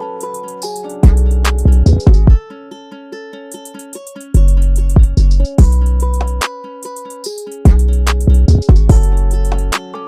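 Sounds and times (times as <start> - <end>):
hi-hat ticks: 0.0 - 2.4, 3.6 - 10.0
plucked-string chords: 0.0 - 10.0
heavy bass beat: 1.0 - 2.4, 4.4 - 6.5, 7.7 - 9.8.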